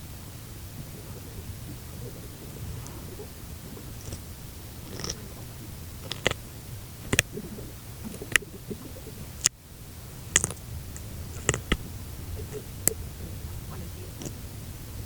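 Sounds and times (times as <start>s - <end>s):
steady low hum: 0.0s - 15.0s
sharp clicks and ticks: 4.8s - 5.4s, 6.0s - 6.4s, 7.0s - 7.4s, 10.3s - 11.9s.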